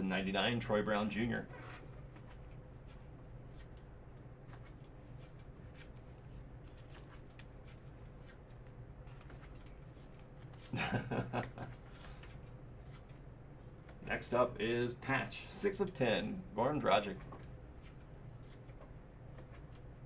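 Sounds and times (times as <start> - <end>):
person speaking: 0.0 - 1.5, 14.0 - 17.4
steady low hum: 0.0 - 20.0
trading cards rustling: 4.5 - 10.8.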